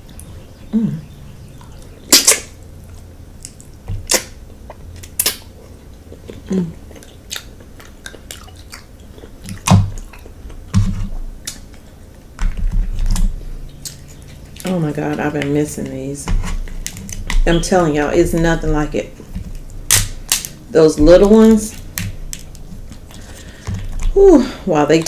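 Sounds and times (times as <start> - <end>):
chewing and lip smacking: 1.0 - 17.7, 21.6 - 24.2.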